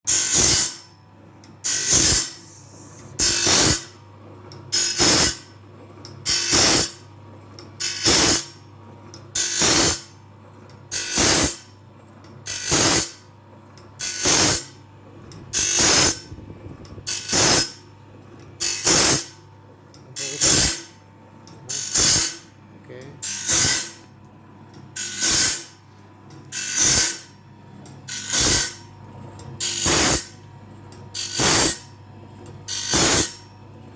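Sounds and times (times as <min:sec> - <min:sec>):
grinding wheel rasping on blade: 0:00.1 - 0:00.8, 0:01.7 - 0:03.9, 0:12.5 - 0:13.2, 0:14.0 - 0:14.7, 0:15.5 - 0:16.3, 0:17.1 - 0:17.8, 0:18.6 - 0:19.4, 0:20.2 - 0:20.9, 0:21.7 - 0:22.5, 0:23.2 - 0:24.0, 0:25.0 - 0:25.8, 0:26.5 - 0:27.3, 0:28.1 - 0:28.8, 0:29.6 - 0:30.3, 0:31.2 - 0:31.8, 0:32.7 - 0:33.4
steady motor hum: 0:00.1 - 0:33.9.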